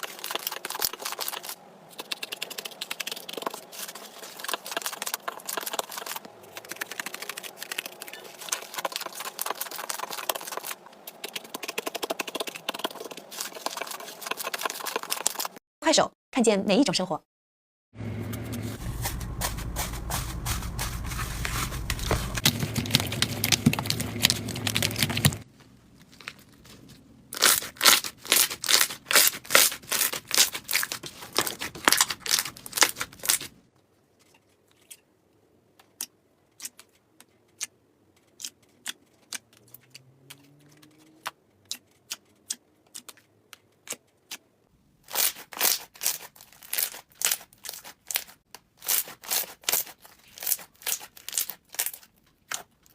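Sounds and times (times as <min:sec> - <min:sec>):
slime crackling and popping: 0:00.0 - 0:15.5, 0:18.9 - 0:33.6, 0:45.1 - 0:52.7.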